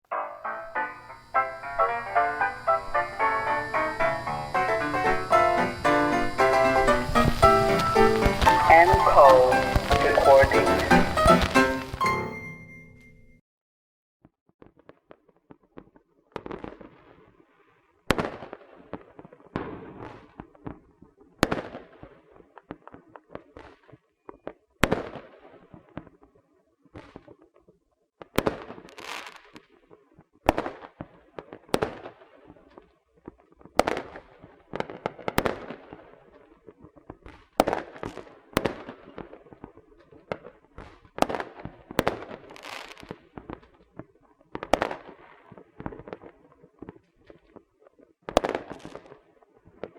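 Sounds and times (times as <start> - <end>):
firecrackers banging and crackling: 0.1 - 12.2, 33.8 - 36.2.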